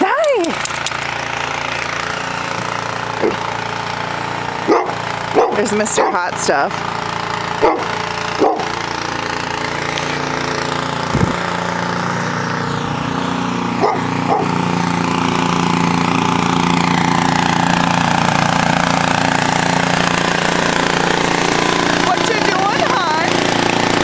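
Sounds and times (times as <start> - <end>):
snowblower engine running: 0.0 - 24.0
dog barking: 3.2 - 3.4, 4.7 - 6.2, 7.6 - 8.7, 13.8 - 14.5.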